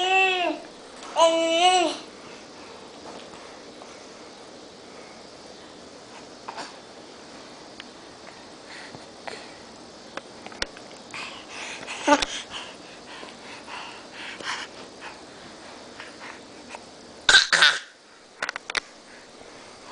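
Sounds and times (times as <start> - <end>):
wheezy cough-like vocal noises: 17.3 - 18.0.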